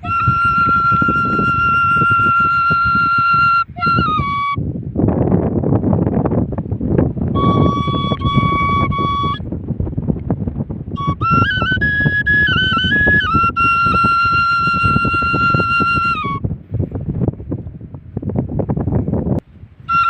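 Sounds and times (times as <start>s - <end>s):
flute folk melody: 0.0s - 4.9s, 7.2s - 9.6s, 10.8s - 16.5s, 19.8s - 20.0s
constant rough noise: 0.0s - 20.0s.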